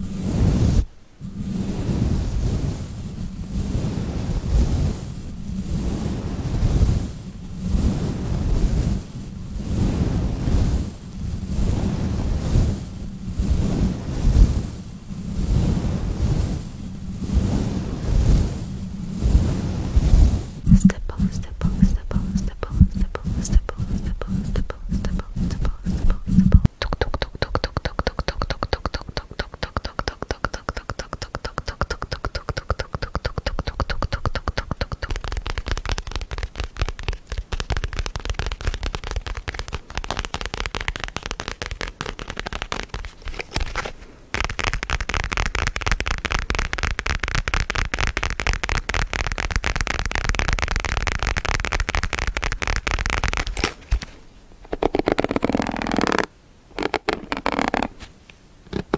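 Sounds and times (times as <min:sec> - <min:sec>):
crackling clicks: 0:20.7 - 0:58.9.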